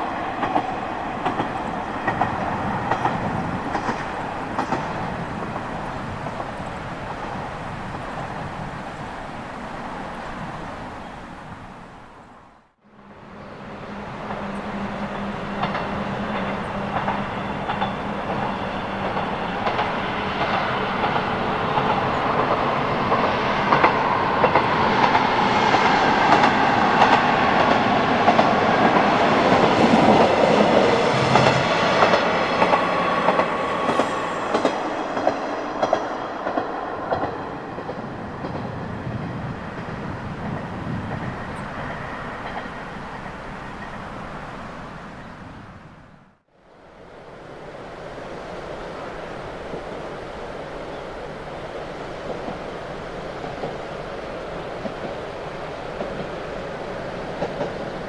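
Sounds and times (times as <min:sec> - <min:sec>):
wheels clicking over rail joints: 0:00.0 - 0:09.0, 0:14.2 - 0:44.0, 0:51.6 - 0:58.0
diesel railcar engine: 0:12.9 - 0:44.9.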